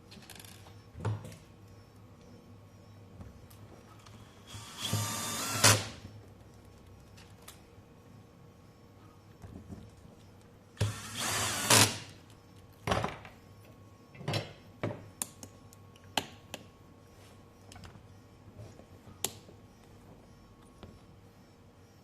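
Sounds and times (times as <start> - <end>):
power screwdriver running: 4.5 - 5.8.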